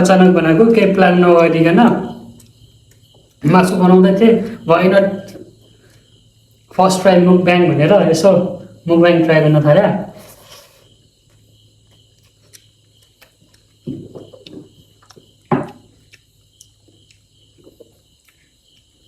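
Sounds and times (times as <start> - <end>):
person chewing: 2.3 - 3.4, 10.2 - 19.0.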